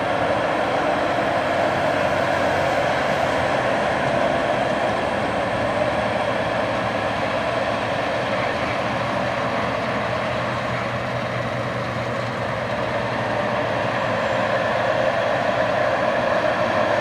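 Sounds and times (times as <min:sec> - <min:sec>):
harvest machinery drone: 0:00.0 - 0:17.0.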